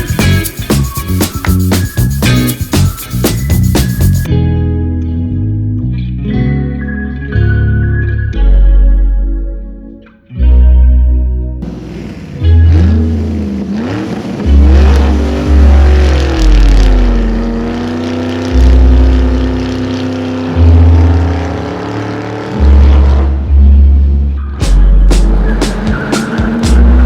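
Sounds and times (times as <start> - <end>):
music with pulsing bass: 0.0 - 11.8, 12.4 - 27.0
car engine revving: 11.6 - 27.0.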